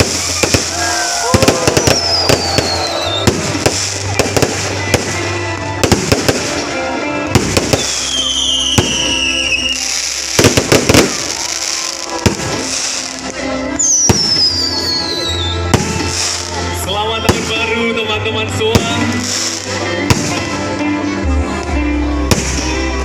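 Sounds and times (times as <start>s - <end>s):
firework whistles falling: 0.0s - 5.2s, 7.4s - 17.6s
fireworks bangs and crackles: 0.0s - 20.8s, 22.2s - 23.0s
background music: 0.0s - 23.0s.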